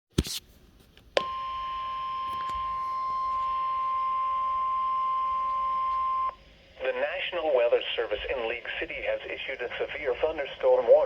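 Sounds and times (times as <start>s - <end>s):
steady high alarm beep: 1.2s - 6.4s
radio hiss: 5.8s - 11.0s.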